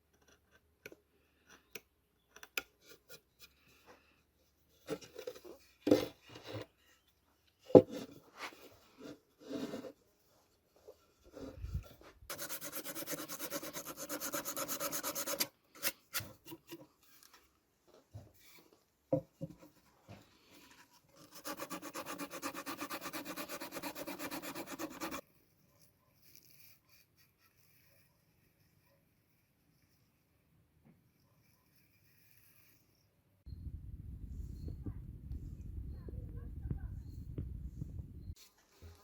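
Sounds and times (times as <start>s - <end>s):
knocks and handling noises: 2.4s - 12.3s, 15.7s - 21.2s
hand sanding strokes: 12.3s - 15.5s, 21.2s - 25.2s.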